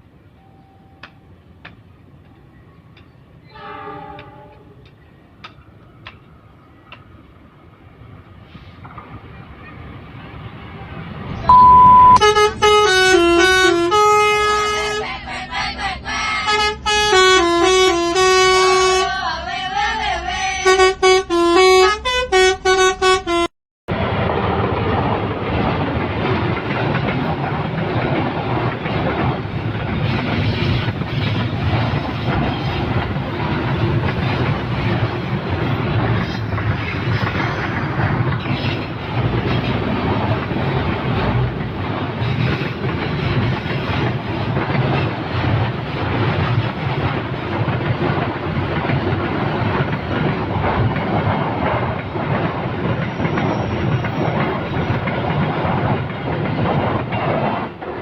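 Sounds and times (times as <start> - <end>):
horn playing a melody: 11.5 - 15.0.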